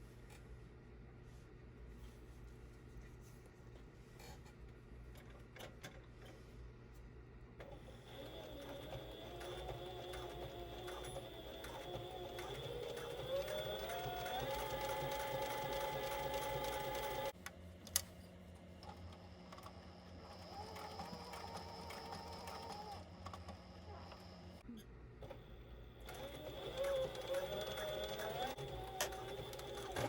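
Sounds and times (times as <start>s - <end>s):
sewing machine running: 7.9s - 17.3s, 26.1s - 30.0s.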